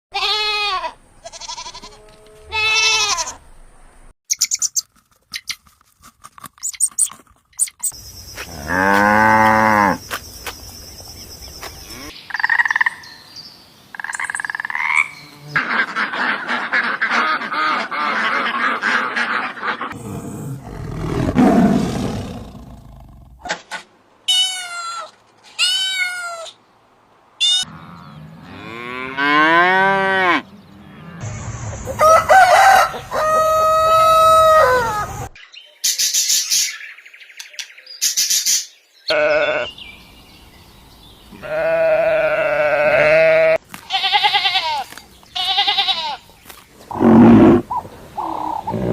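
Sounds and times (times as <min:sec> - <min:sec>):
animal cries and bleats: 0:00.1 - 0:03.4, 0:24.3 - 0:26.6, 0:39.1 - 0:39.7, 0:41.3 - 0:46.2
cow mooing: 0:27.7 - 0:31.2
low rumbling animal call: 0:46.9 - 0:48.9.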